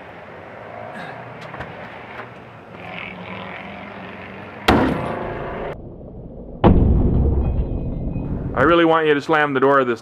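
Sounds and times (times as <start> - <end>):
loud bang: 4.7 - 8.8.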